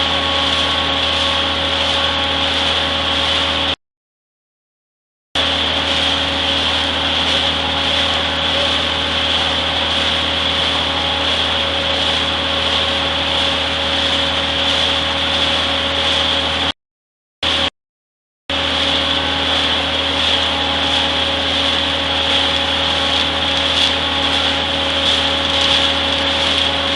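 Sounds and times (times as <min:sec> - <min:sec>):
machinery hum: 0:00.0 - 0:03.8, 0:05.4 - 0:16.7, 0:18.5 - 0:26.9.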